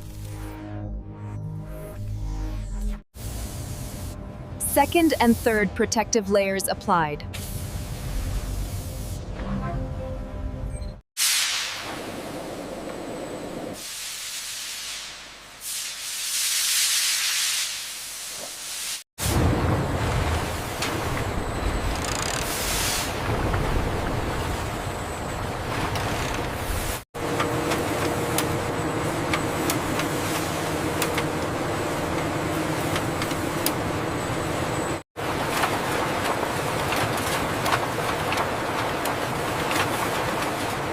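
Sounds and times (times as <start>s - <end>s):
factory machinery humming: 0.1s - 13.9s, 19.2s - 40.9s
steam hissing: 13.8s - 19.0s.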